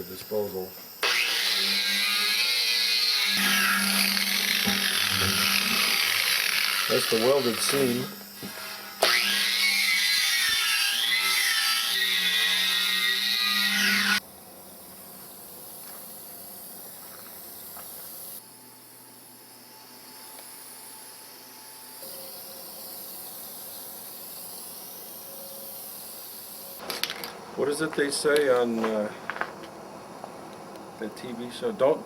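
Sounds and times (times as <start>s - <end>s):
steady hiss: 0.0s - 10.6s, 14.2s - 32.0s
power tool whining: 1.0s - 14.2s.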